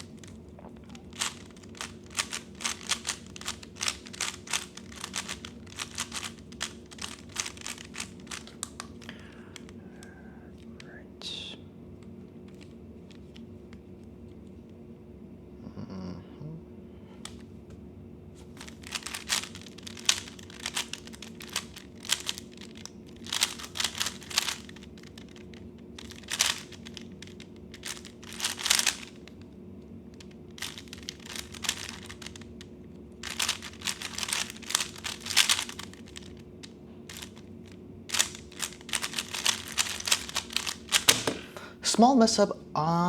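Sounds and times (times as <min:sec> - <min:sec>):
faint steady hum: 0:00.0 - 0:43.0
plastic cube clicking: 0:01.1 - 0:09.8, 0:18.6 - 0:29.3, 0:30.6 - 0:32.4, 0:33.2 - 0:36.4, 0:37.1 - 0:41.4.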